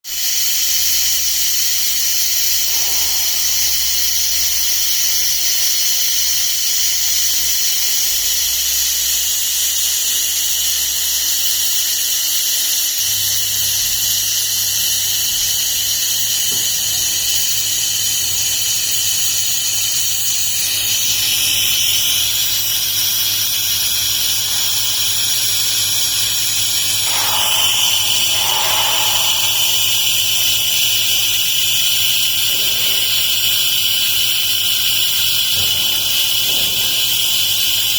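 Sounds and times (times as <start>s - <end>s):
high-pitched hiss and whine: 0.3s - 5.2s, 26.4s - 34.2s
low hum: 26.8s - 31.8s.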